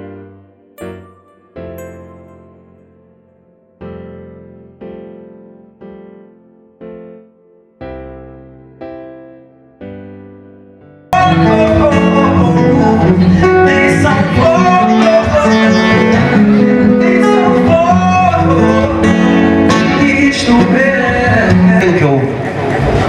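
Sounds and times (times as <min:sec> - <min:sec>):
soft piano chord: 0:00.0 - 0:20.3
singing over guitar and band: 0:11.2 - 0:21.8.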